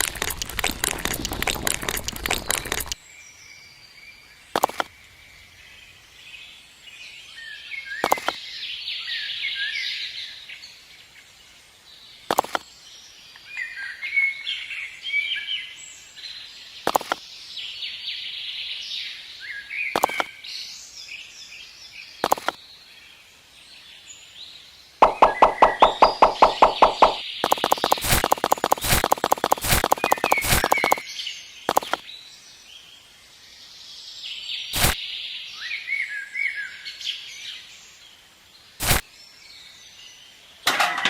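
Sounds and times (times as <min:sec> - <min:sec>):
sharp clicks: 0:00.0 - 0:03.0, 0:04.6 - 0:04.9, 0:16.9 - 0:17.2, 0:20.0 - 0:20.3, 0:22.2 - 0:22.6, 0:25.0 - 0:31.0, 0:31.7 - 0:32.0, 0:34.8 - 0:35.0, 0:38.8 - 0:39.0
small birds chirping: 0:00.0 - 0:14.6, 0:15.2 - 0:40.6.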